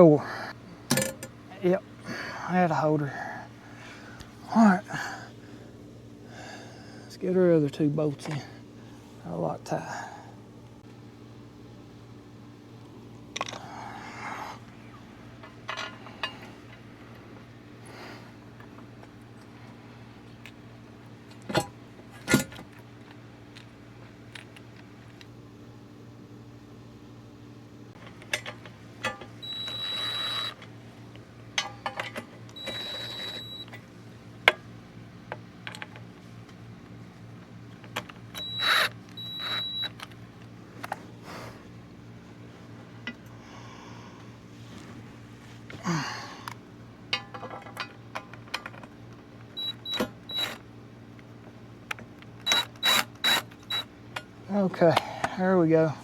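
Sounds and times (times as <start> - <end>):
metal tools and bolts clinking: 0.9 - 1.4, 28.0 - 30.7, 31.6 - 33.8, 47.1 - 49.0
socket ratchet clicking: 28.2 - 30.6, 37.9 - 40.1, 52.3 - 53.9
short whirring bursts: 29.4 - 30.6, 32.5 - 33.7, 38.4 - 40.0, 49.6 - 50.6, 52.4 - 53.9.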